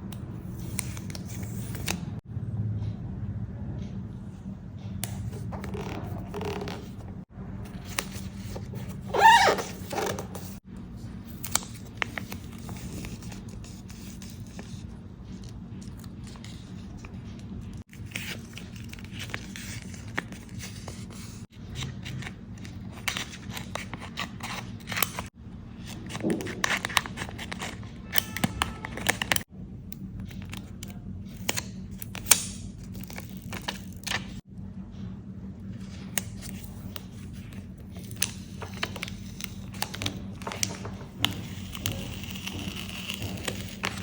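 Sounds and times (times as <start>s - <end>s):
paper rustling and scraping: 0.4s - 2.2s, 5.1s - 29.5s, 35.8s - 44.0s
squeaky tearing of tape: 9.0s - 10.6s
low steady hum: 25.3s - 44.0s.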